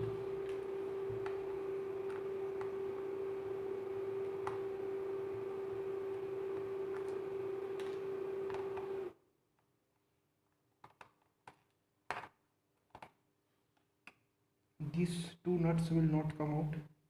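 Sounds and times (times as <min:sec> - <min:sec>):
steady hum: 0:00.0 - 0:09.1.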